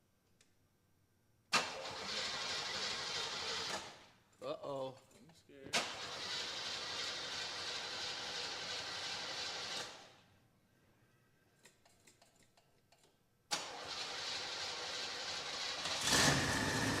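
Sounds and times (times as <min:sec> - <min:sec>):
car engine running and revving: 0:15.8 - 0:17.0.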